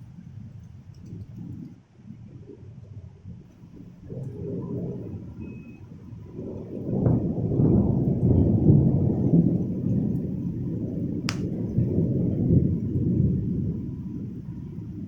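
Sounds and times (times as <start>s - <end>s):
thunder rumbling: 4.0s - 15.0s.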